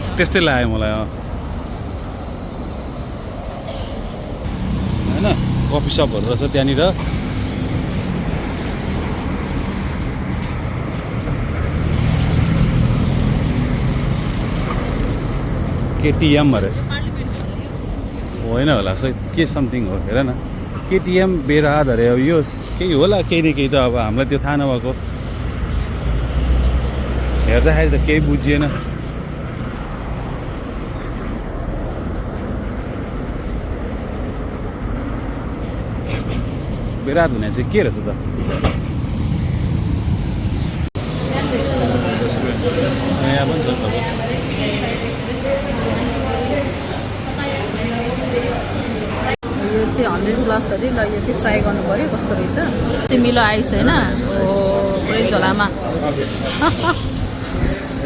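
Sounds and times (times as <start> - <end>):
street traffic: 0.0 - 58.0
vehicle engine running nearby: 4.4 - 18.5.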